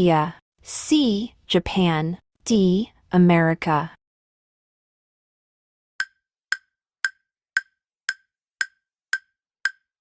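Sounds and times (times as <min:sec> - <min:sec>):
countdown timer ticks: 0:06.0 - 0:10.0.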